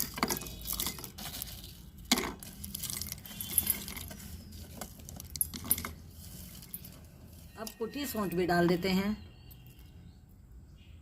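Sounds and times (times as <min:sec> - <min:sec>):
seeds rattling into grinder jar: 0:00.0 - 0:07.8.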